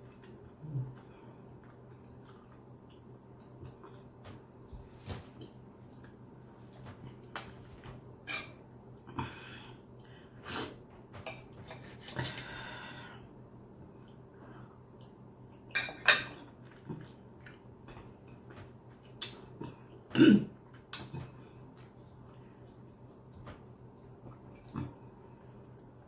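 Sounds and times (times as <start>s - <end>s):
cutlery clinking on a plate: 15.8s - 16.4s.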